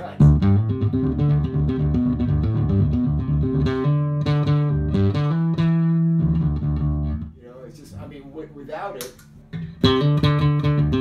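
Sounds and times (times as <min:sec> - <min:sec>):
overdriven electric bass: 0:00.2 - 0:07.3, 0:09.5 - 0:11.0.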